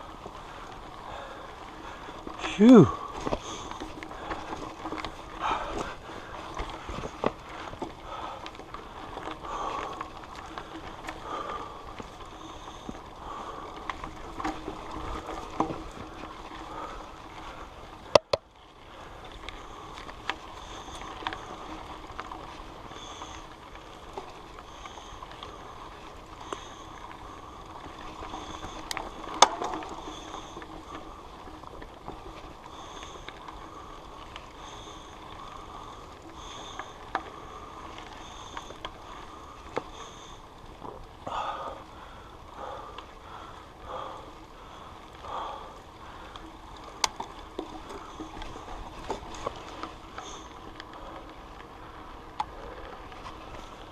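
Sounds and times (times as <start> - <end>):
camera rattling and knocking: 18.1 - 18.4.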